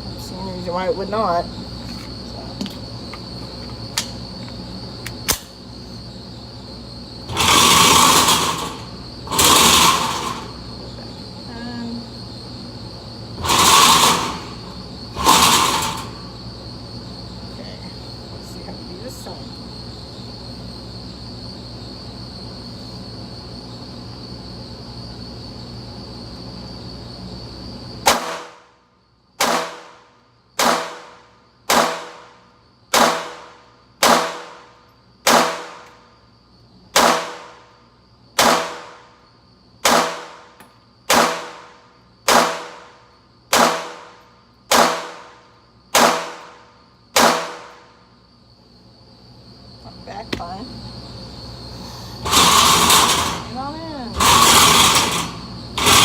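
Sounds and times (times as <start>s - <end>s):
high insect chirring: 0.0s - 56.0s
pistol shots echoing: 30.6s - 31.1s, 31.7s - 32.2s, 33.0s - 33.4s, 44.7s - 45.2s, 46.0s - 46.4s.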